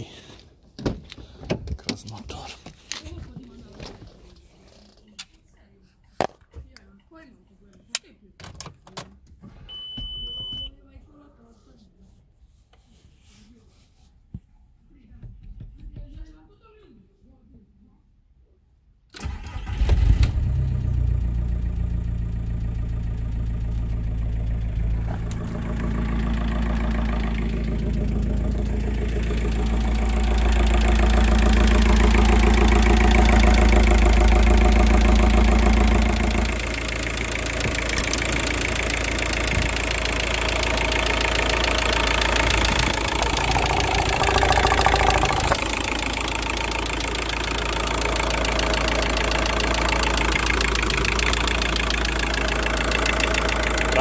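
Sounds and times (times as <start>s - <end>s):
diesel engine starting and idling: 19.1s - 54.0s.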